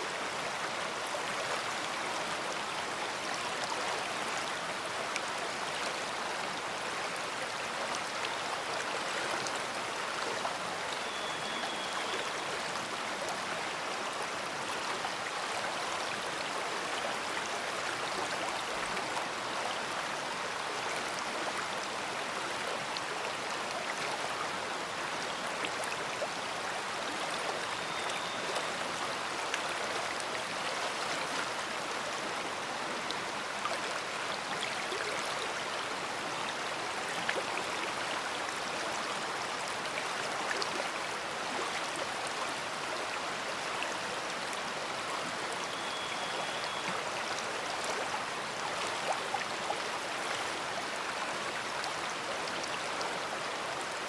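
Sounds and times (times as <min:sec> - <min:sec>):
river water rushing: 0:00.0 - 0:54.0.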